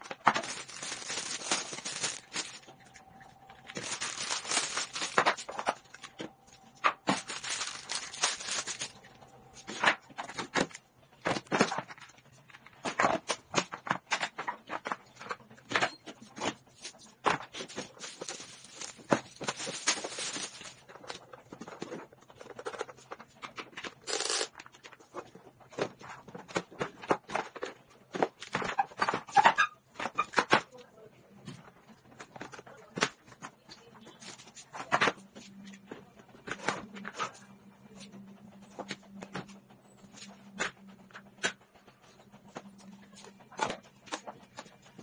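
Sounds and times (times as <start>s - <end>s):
wrapping rustling and crinkling: 0.0s - 9.1s, 16.6s - 26.6s.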